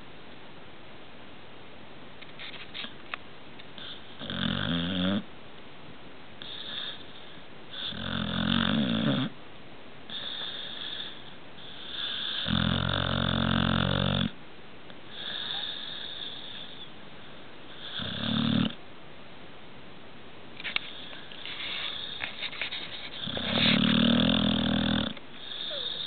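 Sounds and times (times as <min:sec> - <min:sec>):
pet snoring: 0:03.8 - 0:05.3, 0:06.4 - 0:09.4, 0:10.1 - 0:14.4, 0:15.1 - 0:16.9, 0:17.7 - 0:18.8, 0:23.1 - 0:26.0
soft breaths: 0:06.4 - 0:08.0, 0:15.0 - 0:18.0, 0:20.6 - 0:26.0.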